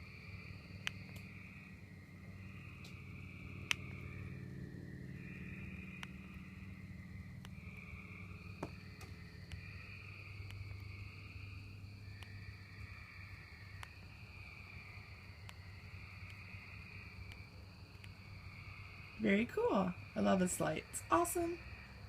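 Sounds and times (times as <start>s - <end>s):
low hum: 0.0s - 22.0s
tree frogs calling: 0.0s - 22.0s
faint clicks: 12.2s - 12.4s, 13.8s - 14.0s, 17.2s - 18.2s.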